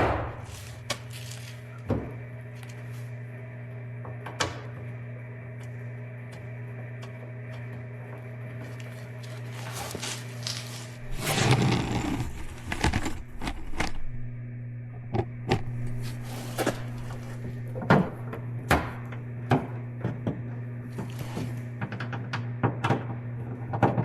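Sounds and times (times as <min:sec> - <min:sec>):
steady low hum: 0:00.0 - 0:24.0
scraping and rustling: 0:00.4 - 0:01.8, 0:08.6 - 0:14.1.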